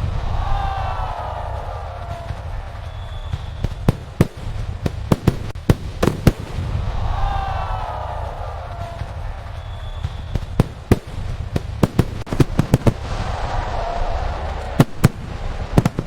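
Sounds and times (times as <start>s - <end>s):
fireworks booming rumble: 0.0s - 16.0s
fireworks sharp cracks: 0.0s - 16.0s.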